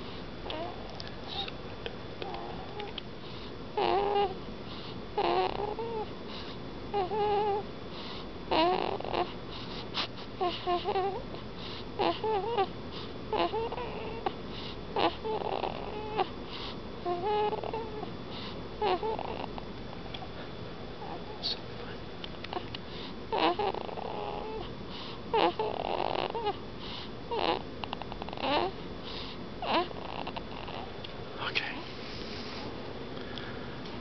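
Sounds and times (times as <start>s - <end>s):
baby snoring: 0.4s - 1.5s, 2.2s - 2.9s, 3.8s - 4.4s, 5.2s - 19.6s, 22.5s - 30.9s.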